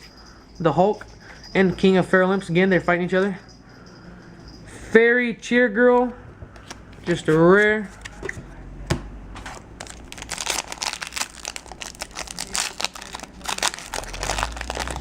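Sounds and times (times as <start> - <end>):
foil wrapper crinkling: 9.8 - 15.0.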